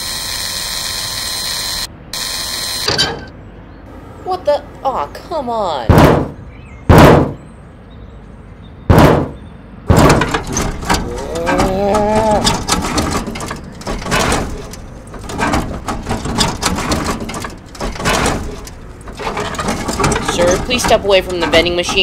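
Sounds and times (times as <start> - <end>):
banging and clattering knocks: 5.9 - 7.4, 8.9 - 22.0
heavy thump: 5.9 - 7.4, 8.9 - 22.0
wavering groaning cry: 10.9 - 12.7.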